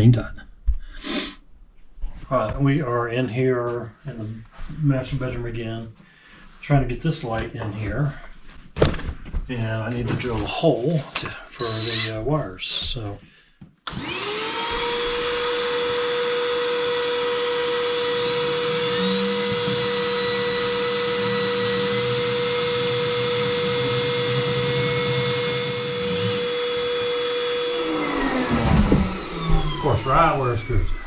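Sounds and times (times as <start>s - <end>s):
electric drill running: 11.6s - 12.2s, 13.9s - 31.0s.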